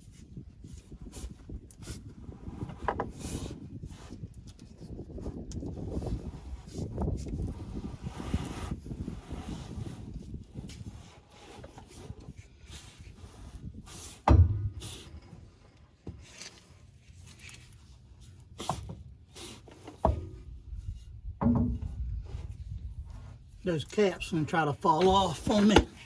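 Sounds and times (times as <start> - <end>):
driveshaft thunks and knocks: 14.2 - 15.5, 20.0 - 20.6, 21.4 - 22.1.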